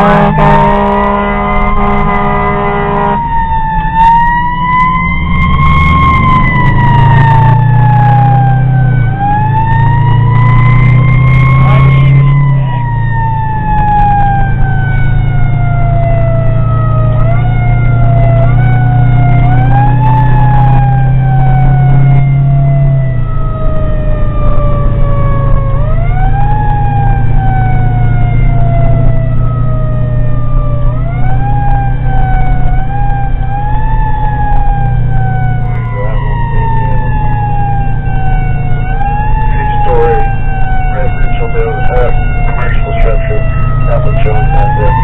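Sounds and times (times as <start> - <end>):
heavy engine drone: 0.0 - 3.7, 32.2 - 45.0
fire engine siren wailing: 0.0 - 45.0.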